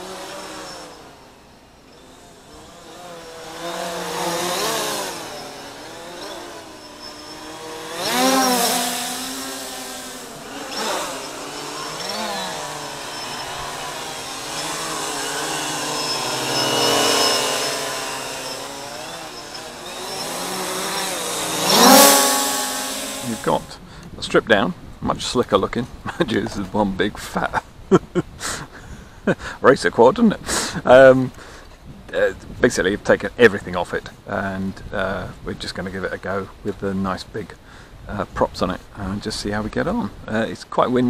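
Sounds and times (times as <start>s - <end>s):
quadcopter propellers whining: 0.0s - 24.0s.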